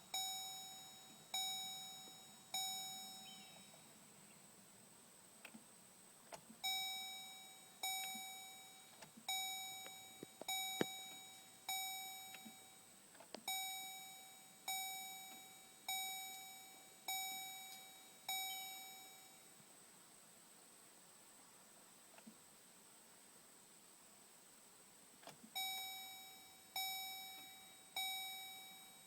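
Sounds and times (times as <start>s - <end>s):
dashboard warning chime: 0.0s - 4.1s, 6.6s - 19.5s, 25.6s - 29.0s.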